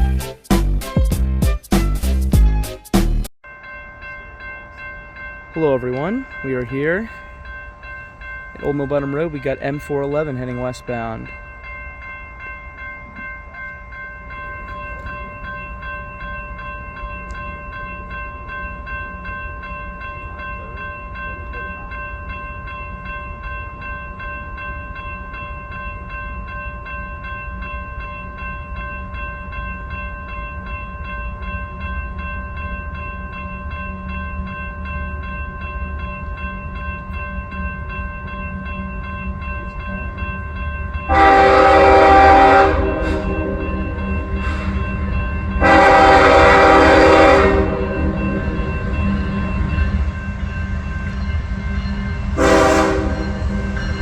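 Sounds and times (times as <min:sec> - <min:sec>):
crossing warning bell ringing: 0:03.4 - 0:54.0
freight train rumbling: 0:30.6 - 0:54.0
locomotive air horn blast: 0:41.1 - 0:44.8, 0:45.6 - 0:48.4, 0:52.4 - 0:53.4.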